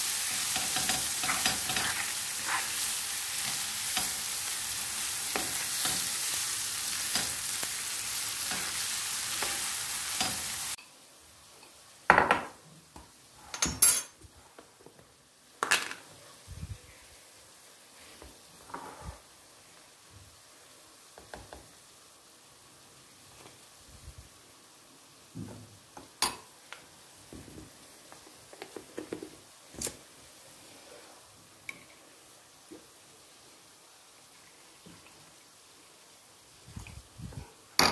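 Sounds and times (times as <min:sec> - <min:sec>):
food sizzling in a frying pan: 0:00.0 - 0:13.6, 0:15.2 - 0:37.9
dishes and utensils clinking: 0:13.5 - 0:14.2.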